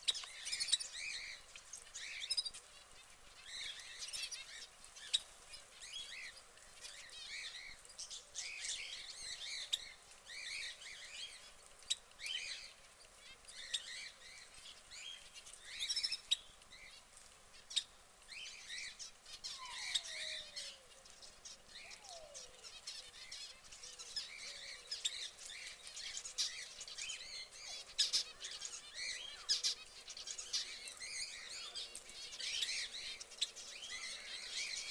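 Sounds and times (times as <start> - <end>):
canary chirping: 18.9 - 20.8.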